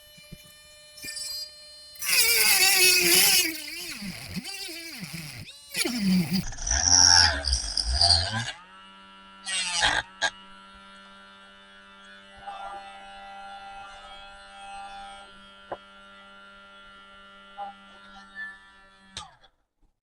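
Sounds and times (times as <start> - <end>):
tool cutting into plastic: 0.0 - 8.5
cutting tool motor humming: 0.0 - 19.3.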